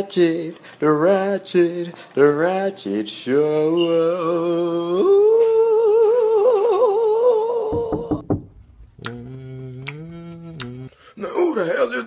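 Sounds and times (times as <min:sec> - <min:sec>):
knocks: 0:07.7 - 0:09.2
person singing a long note: 0:09.0 - 0:10.9.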